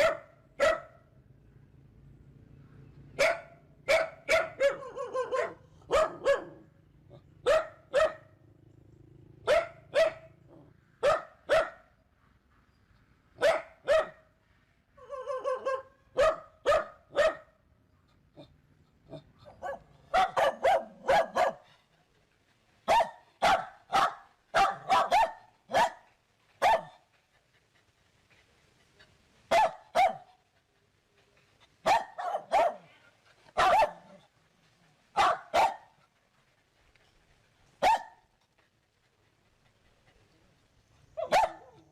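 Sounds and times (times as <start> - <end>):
dog barking: 0.0 - 1.0, 3.2 - 6.6, 7.4 - 8.4, 9.4 - 10.4, 11.0 - 11.9, 13.4 - 14.3, 15.1 - 17.6, 19.6 - 21.6, 22.9 - 27.0, 29.5 - 30.3, 31.8 - 32.9, 33.6 - 34.2, 35.2 - 36.0, 37.8 - 38.2, 41.2 - 41.9.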